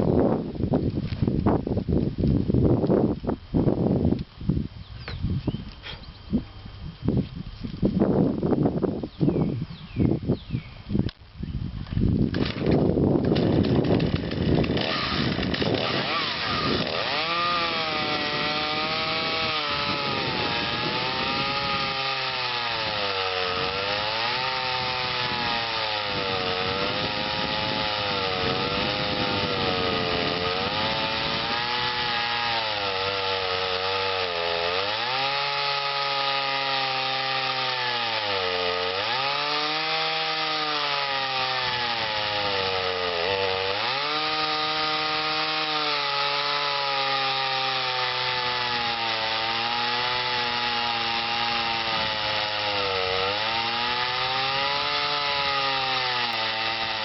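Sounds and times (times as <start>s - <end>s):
chainsaw cutting along a log: 12.3s - 57.0s.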